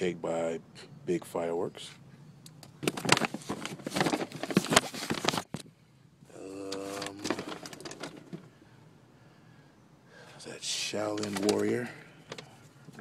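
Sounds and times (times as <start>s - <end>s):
cardboard packaging rustling: 2.8s - 5.6s, 6.8s - 8.4s, 11.1s - 11.8s.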